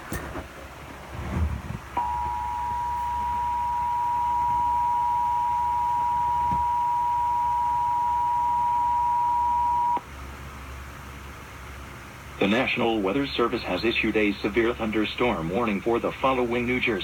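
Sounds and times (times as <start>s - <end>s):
two-tone attention signal: 2.0s - 10.0s.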